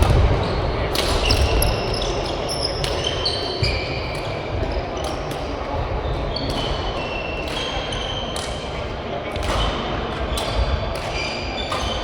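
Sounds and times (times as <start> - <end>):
rackets striking shuttlecock: 0.0 - 3.2, 6.4 - 12.0
shoes squeaking on court floor: 0.0 - 5.4
low hall rumble: 0.0 - 12.0.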